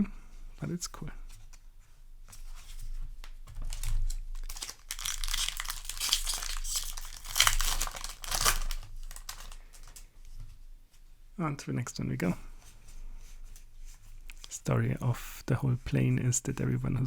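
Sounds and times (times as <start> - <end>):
foil wrapper crinkling: 3.4 - 10.1.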